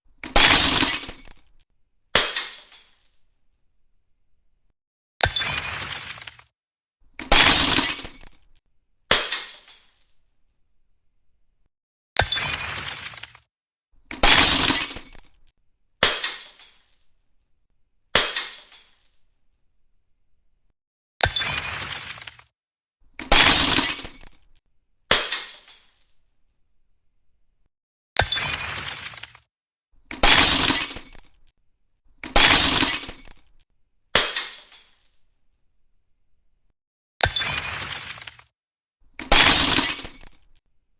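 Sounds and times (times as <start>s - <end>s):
glass shards tinkling: 5.2s - 6.5s, 12.2s - 13.4s, 21.2s - 22.5s, 28.2s - 29.4s, 37.2s - 38.5s
glass shattering: 5.2s - 6.5s, 12.2s - 13.4s, 21.2s - 22.5s, 28.2s - 29.4s, 37.2s - 38.5s.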